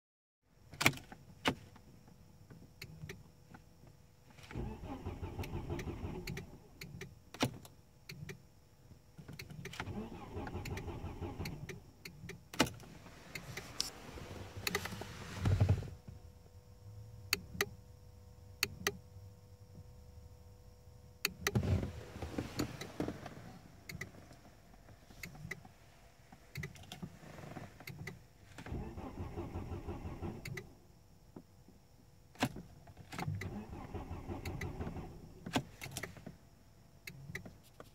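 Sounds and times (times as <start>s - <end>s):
car engine cranking: 4.4s - 8.4s, 9.2s - 16.0s, 21.2s - 25.7s, 26.3s - 30.7s, 32.4s - 36.3s.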